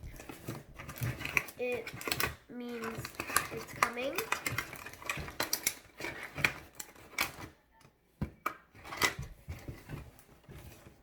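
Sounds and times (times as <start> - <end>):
cardboard clicks taps and rustles: 0.0 - 11.0.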